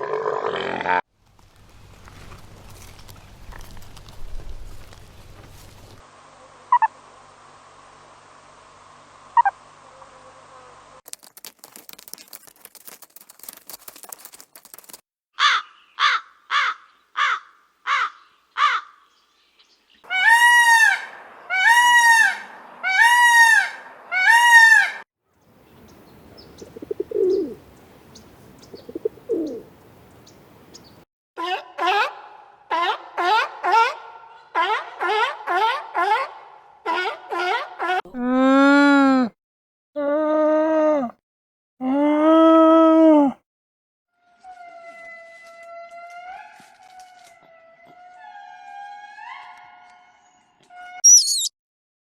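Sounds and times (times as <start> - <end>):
rapid animal clicking: 11.1 - 15.0
short animal calls: 51.0 - 51.5
short animal chirps: 51.0 - 51.5.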